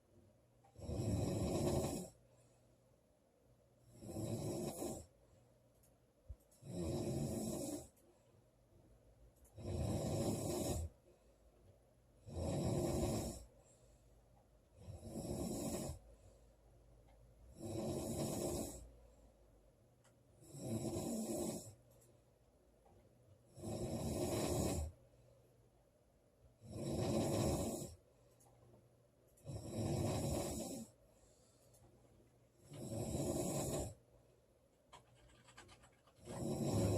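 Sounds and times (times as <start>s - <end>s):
woman snoring: 0.8s - 2.2s, 3.9s - 5.1s, 6.6s - 7.9s, 9.6s - 10.9s, 12.2s - 13.5s, 14.8s - 16.1s, 17.5s - 18.9s, 20.4s - 21.8s, 23.5s - 25.0s, 26.6s - 28.0s, 29.4s - 31.0s, 32.7s - 34.0s, 36.2s - 36.9s.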